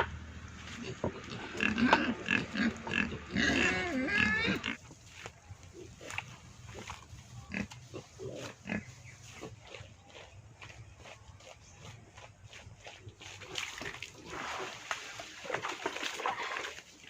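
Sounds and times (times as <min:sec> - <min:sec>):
animal calling: 0:00.0 - 0:04.8.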